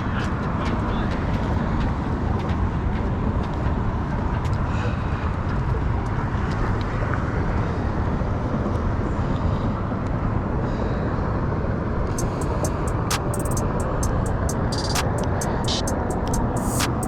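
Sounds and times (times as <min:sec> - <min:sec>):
sharp ticks: 0:12.1 - 0:17.0.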